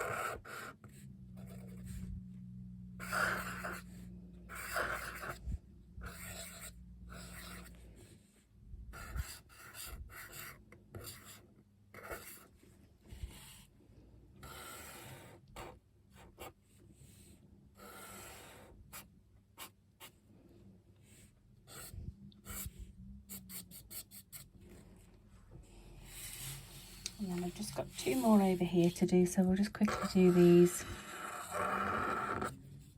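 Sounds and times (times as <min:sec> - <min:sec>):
paintbrush strokes on paper: 0:26.0 - 0:29.1, 0:29.8 - 0:32.9.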